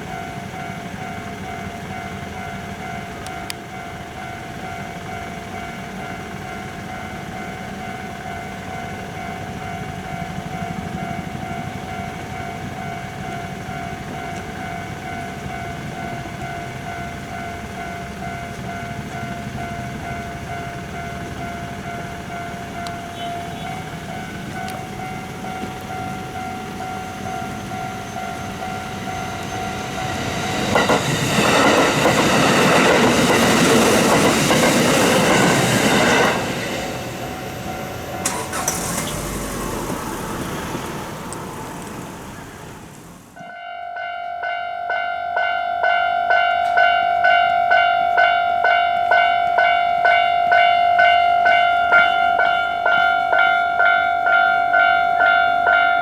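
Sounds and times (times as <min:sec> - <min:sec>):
level crossing warning bell: 0:00.0 - 0:56.0
train wheels clattering: 0:12.7 - 0:43.1.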